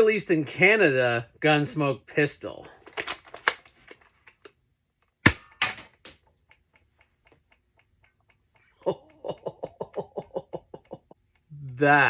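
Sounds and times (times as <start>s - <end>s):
light even ticks: 6.4s - 12.0s.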